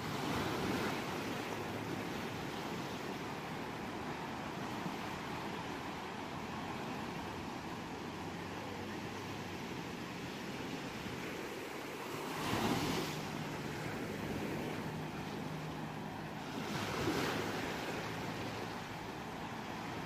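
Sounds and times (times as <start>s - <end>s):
ocean waves washing onto shore: 0.0s - 20.0s
waves breaking: 0.0s - 20.0s.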